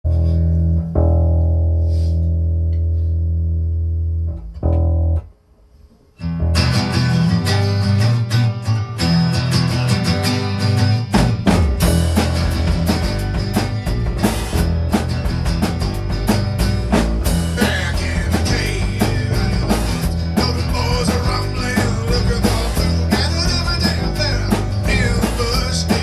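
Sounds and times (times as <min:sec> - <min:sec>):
drum kit playing: 0:09.0 - 0:26.0.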